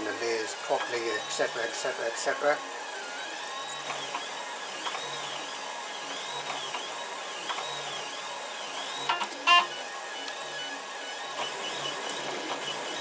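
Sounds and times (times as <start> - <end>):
stepper motors whining: 0.0 - 13.0.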